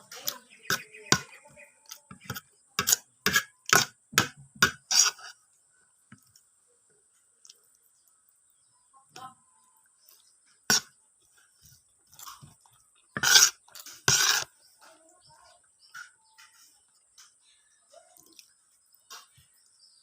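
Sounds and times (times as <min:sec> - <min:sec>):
chewing rice: 0:06.2 - 0:08.6, 0:09.6 - 0:19.8.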